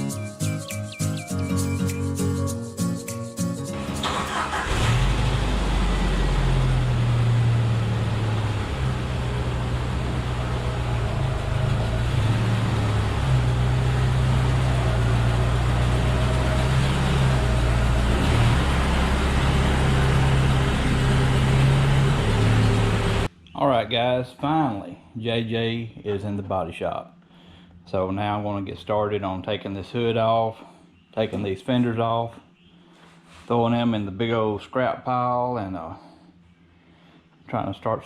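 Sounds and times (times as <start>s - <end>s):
car engine and road noise: 3.7s - 23.3s.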